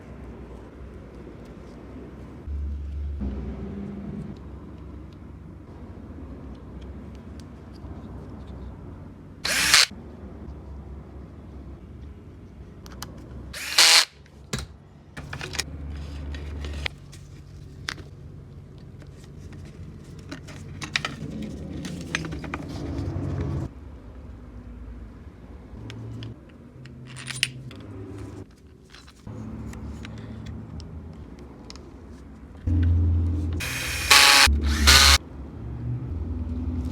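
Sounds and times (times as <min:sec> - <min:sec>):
metal parts and tools clinking: 0:26.8 - 0:29.3
low hum: 0:32.7 - 0:35.2.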